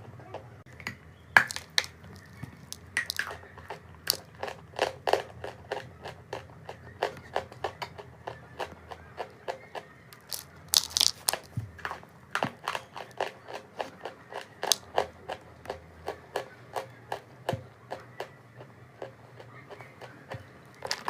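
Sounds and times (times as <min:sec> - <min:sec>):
chalk crunching and crumbling: 0:01.4 - 0:03.4, 0:04.1 - 0:04.6, 0:10.2 - 0:12.1.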